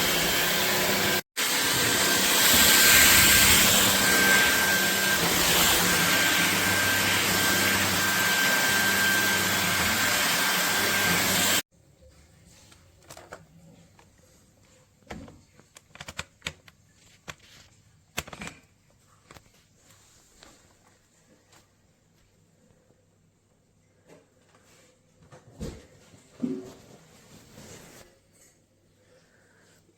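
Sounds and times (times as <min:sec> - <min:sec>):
stick vacuum whining: 0:00.0 - 0:11.6.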